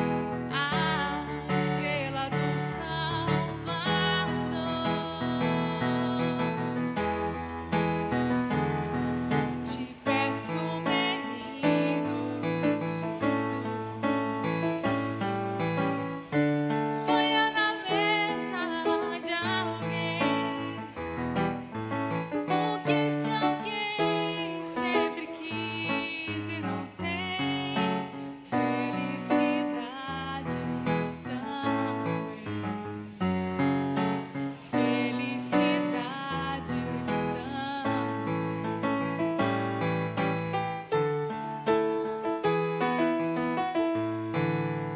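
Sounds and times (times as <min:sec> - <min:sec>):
keyboard music with chords: 0:00.0 - 0:00.5, 0:36.8 - 0:44.9.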